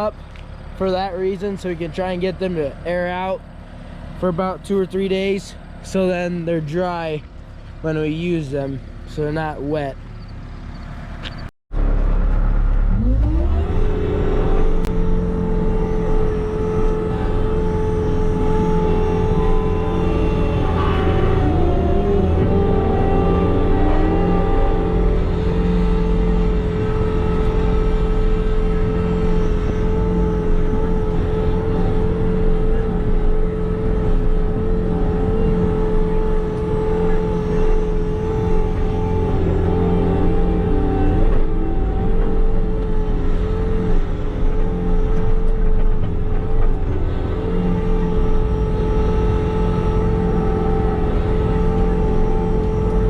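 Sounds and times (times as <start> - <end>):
skid-steer loader engine revving: 0.0 - 53.0
steady whine: 0.0 - 53.0.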